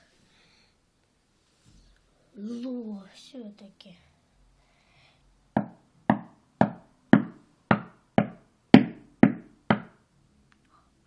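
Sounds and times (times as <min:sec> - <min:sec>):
cartoon knocking on television: 0:05.6 - 0:10.0.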